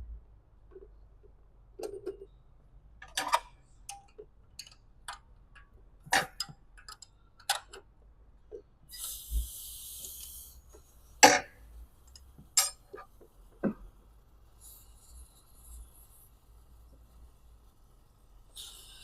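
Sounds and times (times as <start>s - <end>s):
brief hiss: 8.9s - 10.9s, 18.5s - 19.0s.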